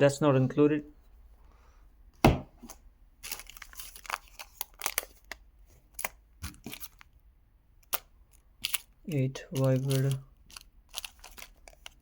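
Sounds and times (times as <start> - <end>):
knock: 2.2 - 2.5
small parts crinkling and clicking: 3.2 - 7.2, 7.8 - 12.0.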